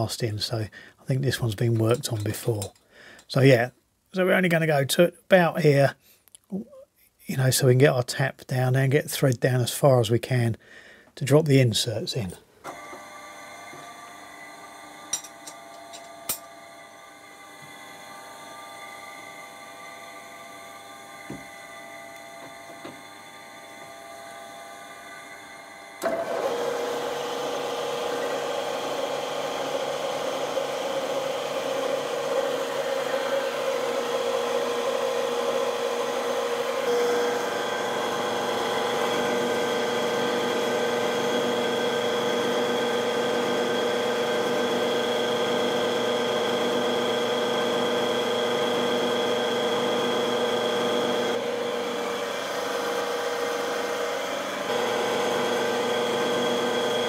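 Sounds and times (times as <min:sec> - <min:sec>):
spindle motor whining: 0:12.6 - 0:57.0.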